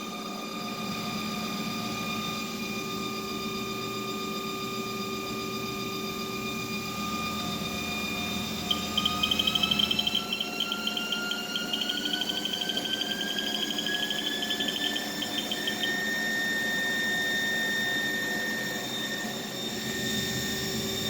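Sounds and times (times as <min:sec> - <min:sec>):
lathe mechanical whine: 0:00.0 - 0:21.0
chirping pulses: 0:07.6 - 0:16.0.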